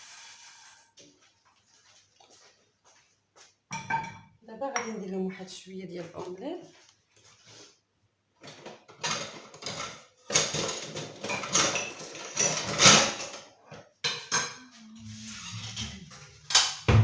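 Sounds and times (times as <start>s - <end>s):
dishes and utensils clattering: 3.7s - 5.1s, 8.4s - 17.0s.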